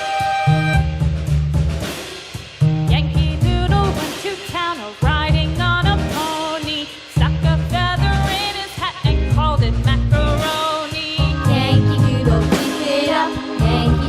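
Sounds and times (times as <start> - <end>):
bouncy children's song music: 2.8 - 14.0.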